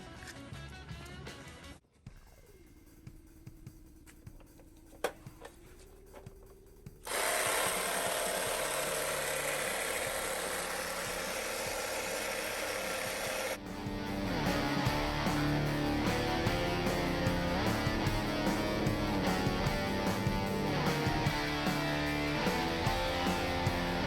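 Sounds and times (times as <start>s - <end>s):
tyre compressor buzzing hiss: 7.0s - 21.0s.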